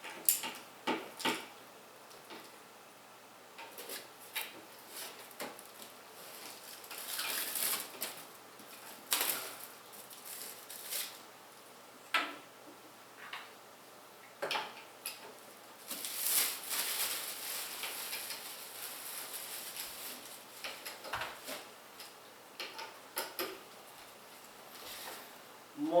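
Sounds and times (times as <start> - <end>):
scraping and rustling: 3.7 - 11.2, 15.3 - 21.8.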